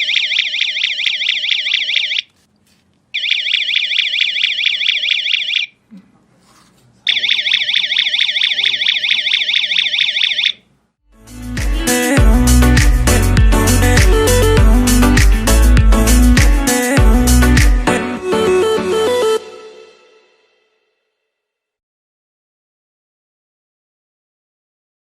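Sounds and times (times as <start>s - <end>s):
warbling electronic siren alarm: 0.0s - 2.3s, 3.2s - 5.8s, 7.1s - 10.6s.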